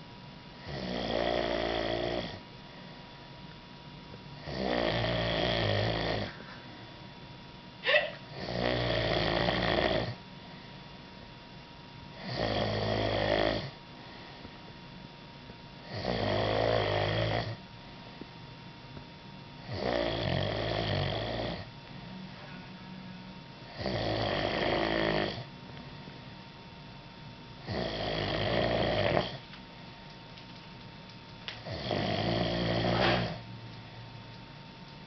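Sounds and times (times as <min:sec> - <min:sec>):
man snoring: 0:00.6 - 0:02.4, 0:04.4 - 0:06.4, 0:08.3 - 0:10.2, 0:12.2 - 0:13.8, 0:15.8 - 0:17.6, 0:19.6 - 0:21.7, 0:23.7 - 0:25.5, 0:27.6 - 0:29.4, 0:31.6 - 0:33.4.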